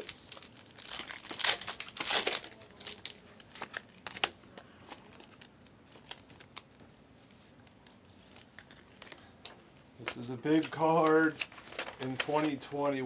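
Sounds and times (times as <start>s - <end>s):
foil wrapper crinkling: 0.0s - 4.3s, 10.1s - 12.7s.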